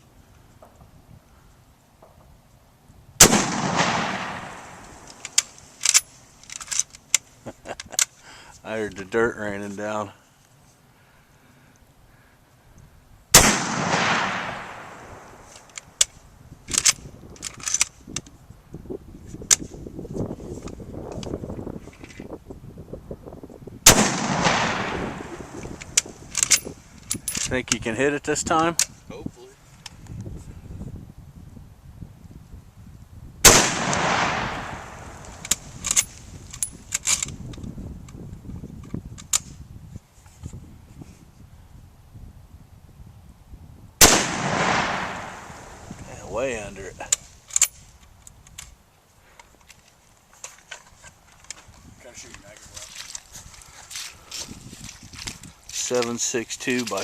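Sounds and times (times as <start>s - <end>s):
rifle shot with echo: 3.2s - 5.1s, 13.3s - 15.5s, 23.8s - 25.9s, 33.4s - 35.6s, 44.0s - 45.9s
sharp clicks and handling noise: 4.3s - 8.2s, 15.4s - 18.4s, 20.5s - 22.3s, 25.6s - 27.9s, 33.9s - 39.6s, 47.0s - 57.0s.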